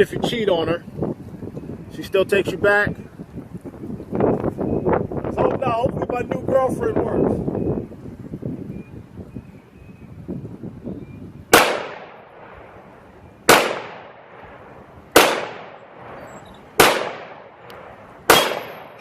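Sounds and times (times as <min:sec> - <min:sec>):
wind rumbling on microphone: 0:00.0 - 0:19.0
pistol shots echoing: 0:11.5 - 0:12.7, 0:13.5 - 0:16.2, 0:16.8 - 0:19.0.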